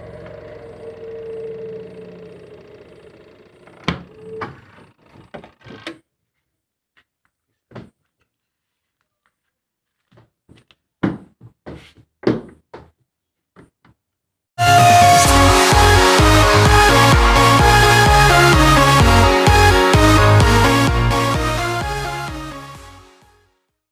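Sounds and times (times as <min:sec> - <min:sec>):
washing machine motor humming: 0:00.0 - 0:04.4.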